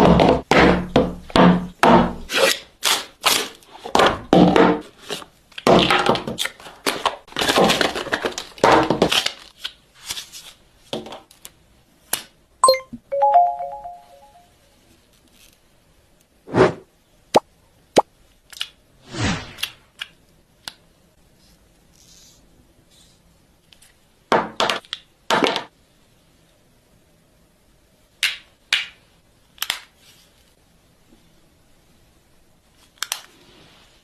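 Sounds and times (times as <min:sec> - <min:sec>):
short electronic beeps: 0:12.6 - 0:14.4.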